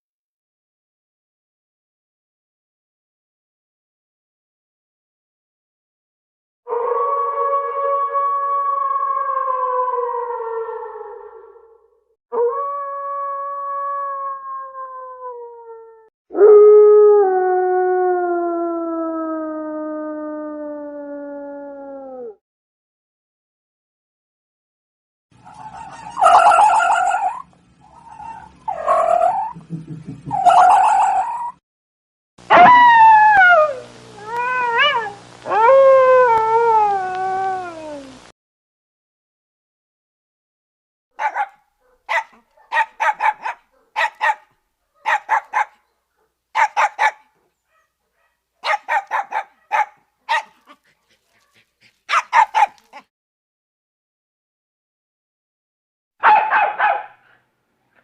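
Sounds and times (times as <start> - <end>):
dog barking: 25.5 - 27.5, 41.2 - 53.1, 56.2 - 57.4.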